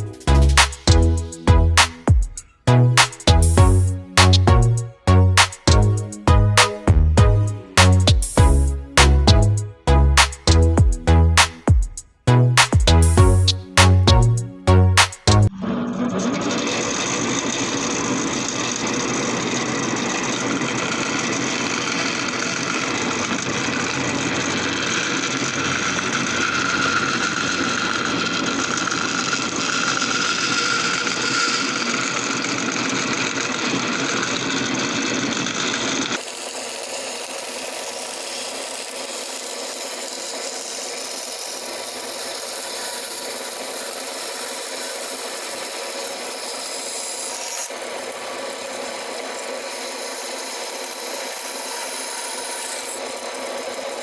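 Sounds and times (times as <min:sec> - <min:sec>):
power tool working wood: 0:15.0 - 0:54.0.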